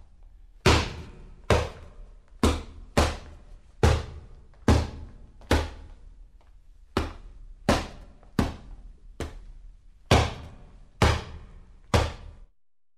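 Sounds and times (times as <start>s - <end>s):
punches thudding on punching bag: 0.6s - 6.0s, 7.0s - 9.4s, 10.1s - 12.4s.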